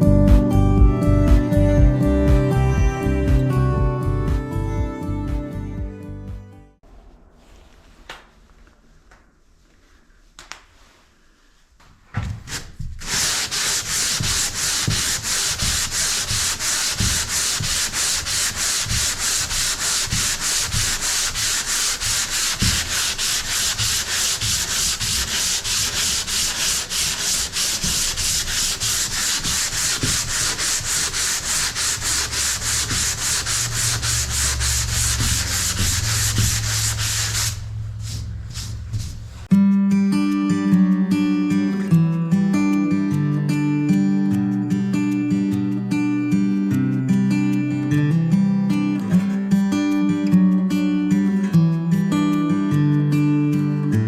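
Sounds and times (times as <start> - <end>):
sanding drywall compound: 12.3 - 39.5
low hum: 33.2 - 39.5.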